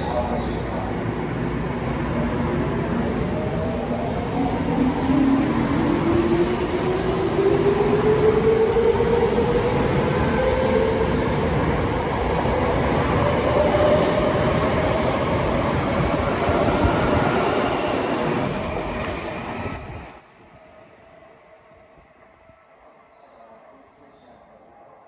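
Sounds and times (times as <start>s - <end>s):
train running noise: 0.0s - 25.0s
inverter whine rising: 19.5s - 25.0s.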